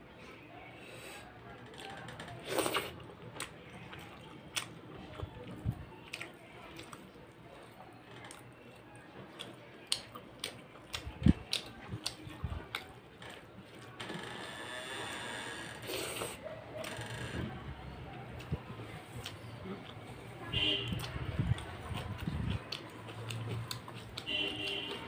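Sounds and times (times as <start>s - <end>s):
person chewing: 2.4s - 7.1s, 9.4s - 13.9s, 20.9s - 25.0s.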